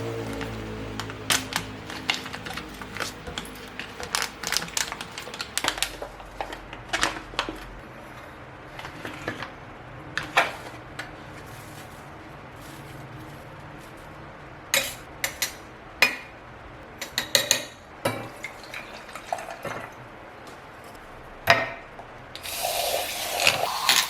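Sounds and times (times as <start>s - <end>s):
small objects clicking and tapping: 0.3s - 7.7s.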